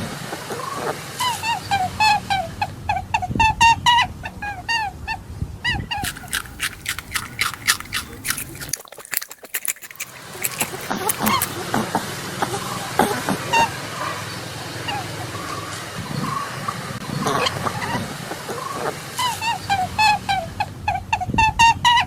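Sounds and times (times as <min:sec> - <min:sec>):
animal chirping calls: 0:06.0 - 0:11.6
crisp crunching clicks: 0:06.0 - 0:11.6.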